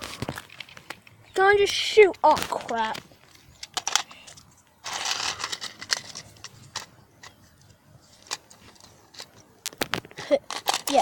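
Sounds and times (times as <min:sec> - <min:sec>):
toy blaster clicking and rattling: 0:03.6 - 0:06.9, 0:10.2 - 0:11.0.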